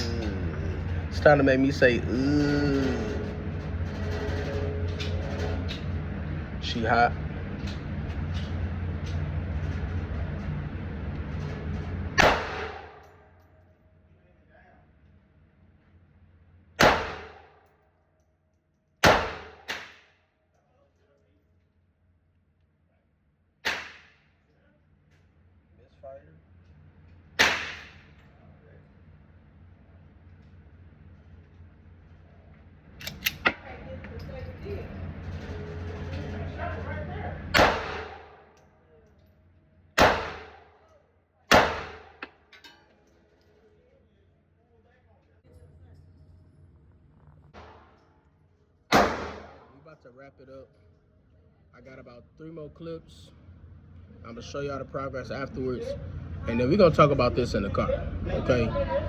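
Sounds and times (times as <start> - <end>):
pistol shots echoing: 12.2 - 13.0, 16.8 - 17.5, 19.0 - 20.0, 23.6 - 24.2, 27.4 - 28.0, 37.5 - 38.4, 40.0 - 40.7, 41.5 - 42.3, 48.9 - 49.7
small metallic clicks: 33.0 - 33.6.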